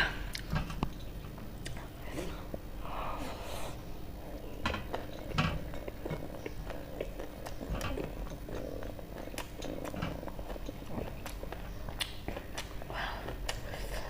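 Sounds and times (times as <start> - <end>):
low steady rumble: 0.0 - 14.0
person chewing food: 3.7 - 14.0.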